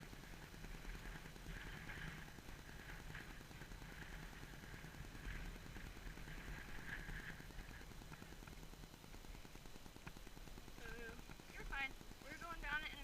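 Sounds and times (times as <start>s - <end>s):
wind rumble on microphone: 0.0s - 8.6s.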